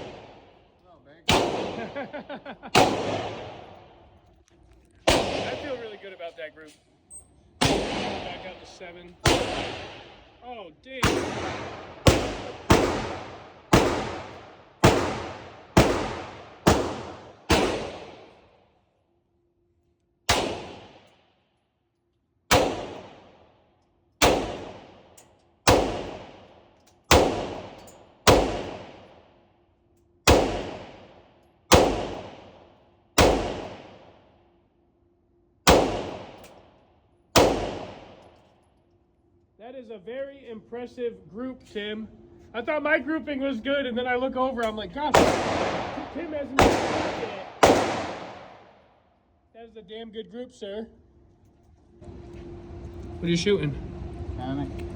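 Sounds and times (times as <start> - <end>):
pistol shots echoing: 0.0 - 4.0, 5.0 - 6.2, 7.6 - 10.4, 11.0 - 18.6, 20.3 - 21.2, 22.5 - 23.5, 24.2 - 29.3, 30.2 - 34.2, 35.6 - 36.6, 37.3 - 38.4, 45.0 - 48.9.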